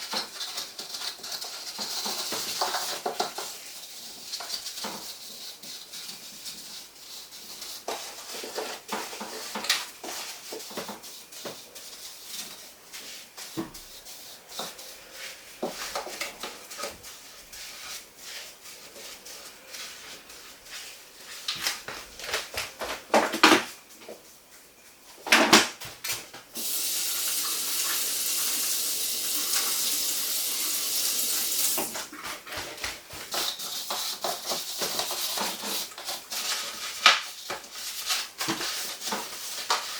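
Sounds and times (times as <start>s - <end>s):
containers and dishes clattering: 0.0s - 3.6s
steady hiss: 0.0s - 25.3s, 26.0s - 39.9s.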